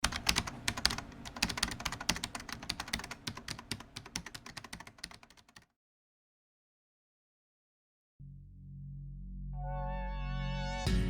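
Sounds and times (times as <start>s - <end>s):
typing on computer keyboard: 0.0s - 5.7s.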